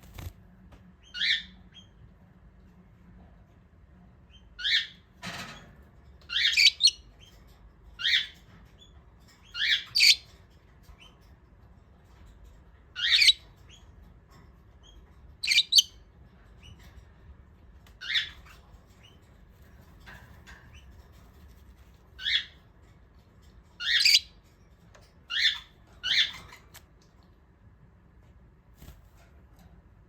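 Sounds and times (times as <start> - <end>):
budgerigar chirping: 1.1 - 1.6, 4.6 - 5.0, 13.0 - 13.4, 15.4 - 16.0, 23.8 - 24.3, 25.3 - 26.4.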